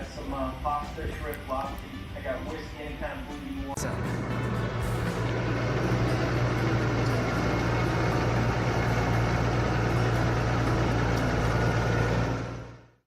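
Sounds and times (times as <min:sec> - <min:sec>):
motor humming: 0:03.5 - 0:12.9.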